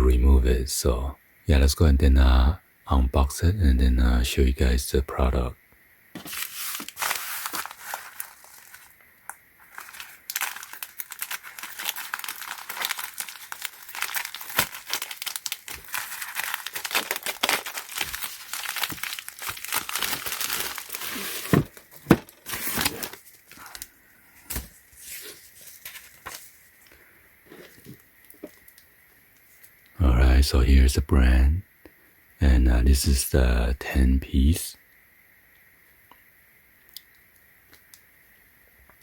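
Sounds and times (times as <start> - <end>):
packaging crinkling and tearing: 6.2 - 23.9, 24.5 - 26.9.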